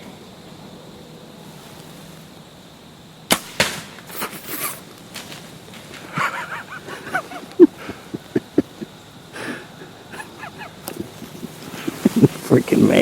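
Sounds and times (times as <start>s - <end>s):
arrow striking crack: 3.3s - 4.5s
rustling and snapping: 3.3s - 7.7s, 10.8s - 12.5s.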